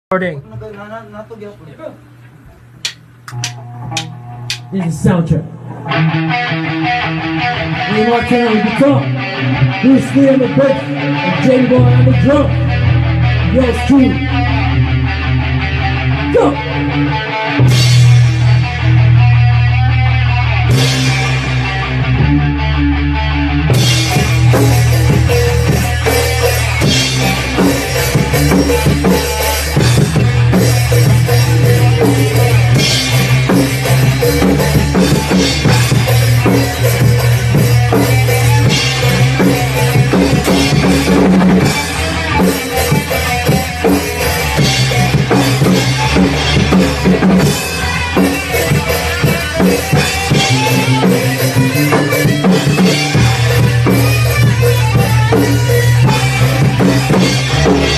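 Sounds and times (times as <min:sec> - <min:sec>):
bass guitar: 0:00.1 - 0:57.9
electric guitar: 0:02.0 - 0:57.9
drum kit: 0:02.2 - 0:57.9.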